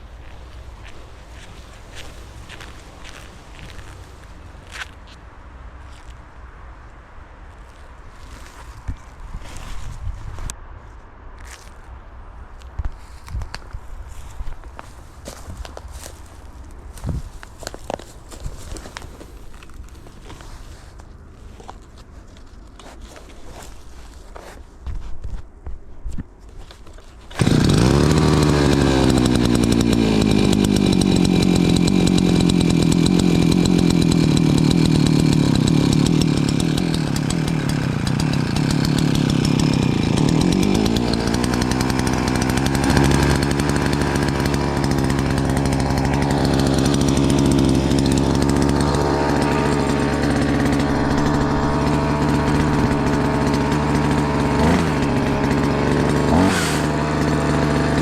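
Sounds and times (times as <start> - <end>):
chainsaw running: 15.2 - 20.4, 27.3 - 58.0.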